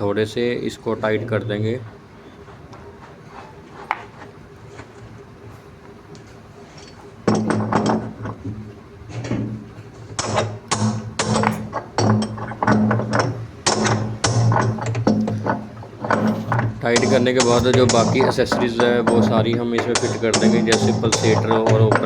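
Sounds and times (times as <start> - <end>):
hammer striking spanner: 6.8 - 22.0.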